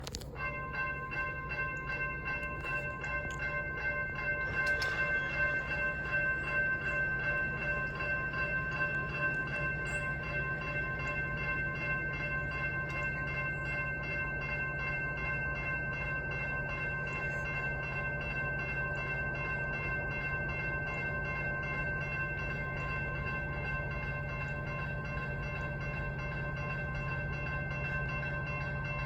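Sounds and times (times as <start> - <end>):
train cars rumbling: 0.0 - 13.7
high steady ringing tones: 0.0 - 29.0.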